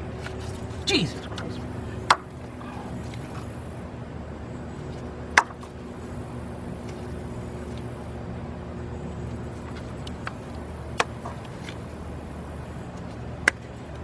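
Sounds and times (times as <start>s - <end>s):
steady low hum: 0.0s - 14.0s
man talking: 0.8s - 2.0s.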